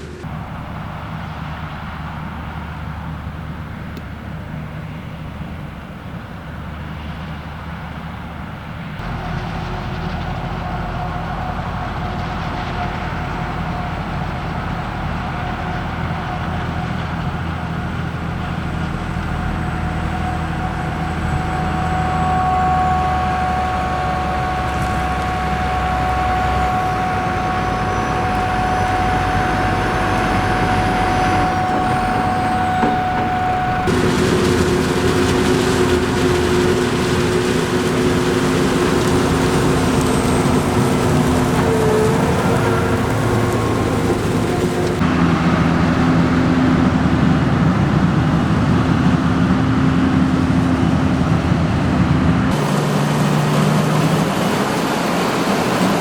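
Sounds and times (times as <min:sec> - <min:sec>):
farm machinery engine drone: 0:00.0 - 0:56.0
high whine: 0:17.4 - 0:49.3
machine low hum: 0:18.4 - 0:45.4.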